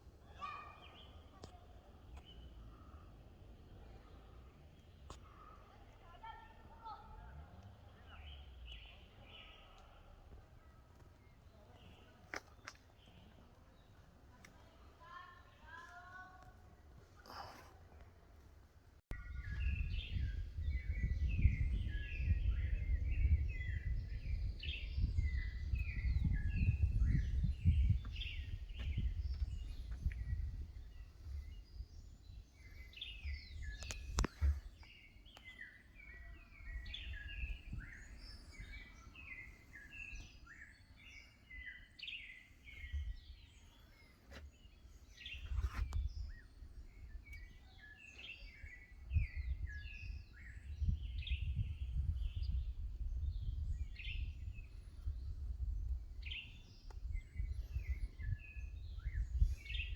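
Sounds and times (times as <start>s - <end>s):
forest birds chirping: 0.0s - 59.9s
low rumble on microphone: 19.1s - 35.0s, 36.2s - 40.2s, 48.6s - 59.9s.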